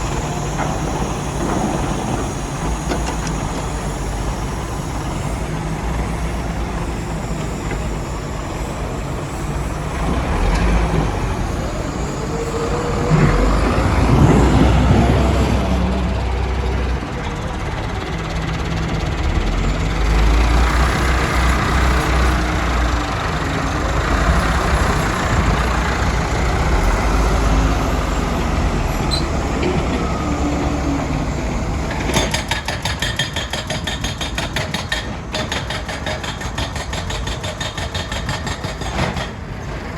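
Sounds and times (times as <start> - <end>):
diesel engine rumble: 0.0 - 32.8, 38.3 - 39.9.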